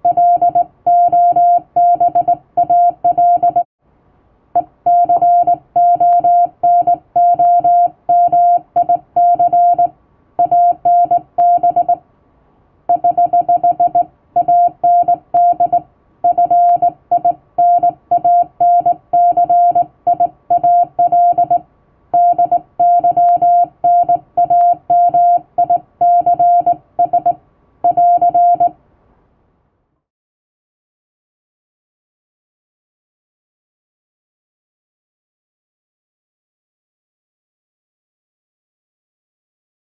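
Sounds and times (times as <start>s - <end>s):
morse code beeps: 0.0s - 3.7s, 4.6s - 12.0s, 12.9s - 21.6s, 22.2s - 28.7s.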